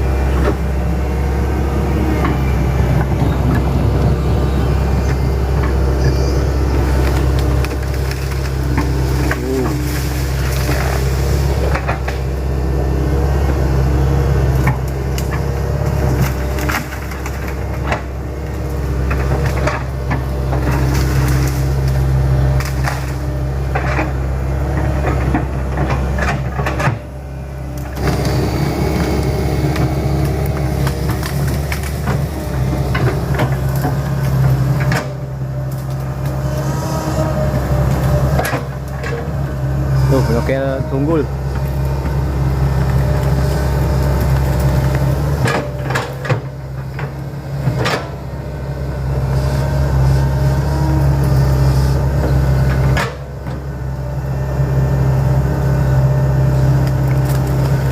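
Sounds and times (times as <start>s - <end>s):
excavator diesel engine running: 0.0s - 57.9s
wood cracking and snapping: 6.9s - 12.3s, 19.0s - 24.0s, 27.8s - 36.4s, 56.7s - 57.9s.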